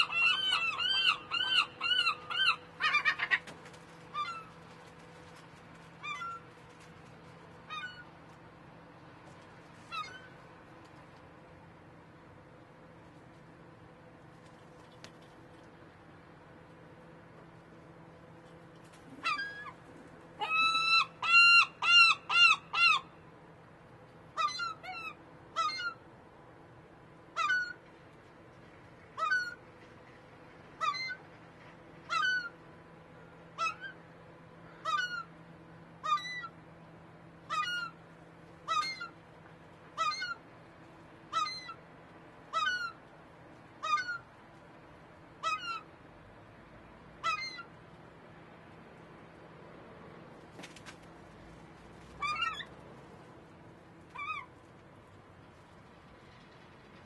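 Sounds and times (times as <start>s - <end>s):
bird calling: 0.0s - 4.6s, 6.0s - 6.5s, 7.7s - 8.1s, 9.9s - 10.4s, 19.2s - 19.8s, 20.4s - 23.2s, 30.8s - 31.2s, 33.6s - 34.0s, 34.6s - 35.3s, 36.0s - 36.6s, 37.5s - 38.0s, 38.7s - 39.2s, 40.0s - 40.4s, 41.3s - 41.8s, 42.5s - 43.0s, 43.8s - 44.3s, 45.4s - 45.9s, 47.2s - 47.7s, 52.2s - 52.7s, 54.2s - 54.5s
faint steady hum: 0.0s - 57.0s.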